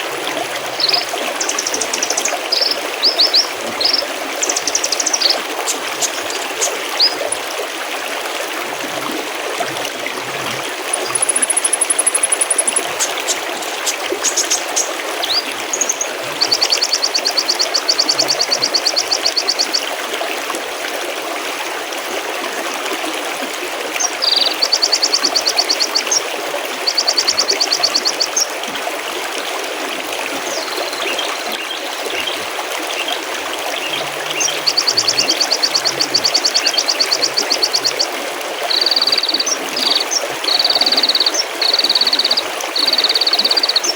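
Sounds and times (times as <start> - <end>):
stream babbling over rocks: 0.0 - 43.9
songbirds trilling and chirping: 0.7 - 7.5, 10.9 - 19.9, 26.8 - 28.5, 30.4 - 33.2, 33.8 - 38.1, 38.7 - 43.9.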